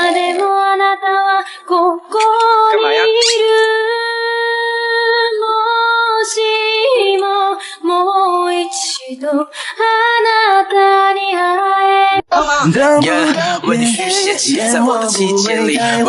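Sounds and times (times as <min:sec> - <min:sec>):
woman singing: 0:00.0 - 0:16.0.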